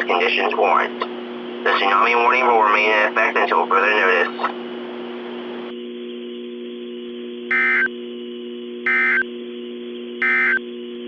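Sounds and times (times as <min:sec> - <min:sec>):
low electronic hum: 0:00.0 - 0:11.0
digital data tone bursts: 0:07.5 - 0:07.9, 0:08.8 - 0:09.3, 0:10.2 - 0:10.6.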